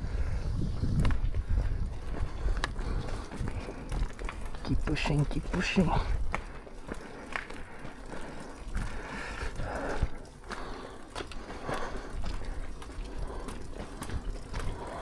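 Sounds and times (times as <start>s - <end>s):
effortful breathing: 0.0s - 4.6s, 5.9s - 15.0s
wind rumble on microphone: 0.0s - 6.5s
footsteps: 0.0s - 15.0s.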